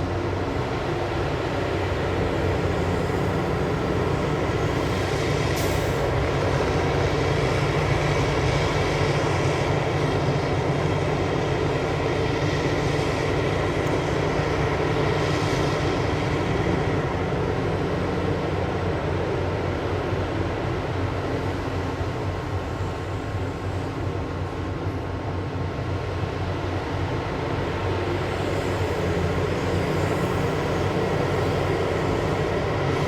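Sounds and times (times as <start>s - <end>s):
heavy diesel engines running: 0.0s - 33.0s.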